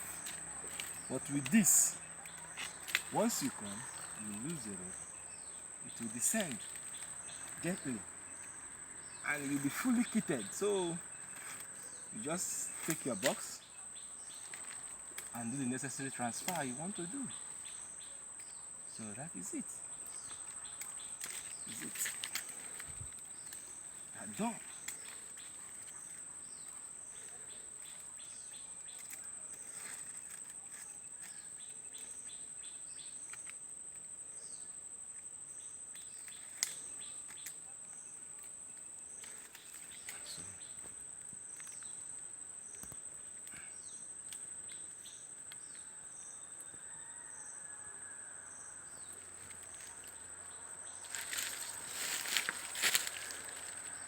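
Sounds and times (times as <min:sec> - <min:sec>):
small clicks and rustles: 0:00.0 - 0:01.6, 0:05.9 - 0:08.6, 0:14.2 - 0:15.4, 0:20.0 - 0:32.4, 0:33.0 - 0:34.1, 0:35.9 - 0:45.8
insects trilling: 0:00.0 - 0:54.0
soft pulsing insect call: 0:00.0 - 0:54.0.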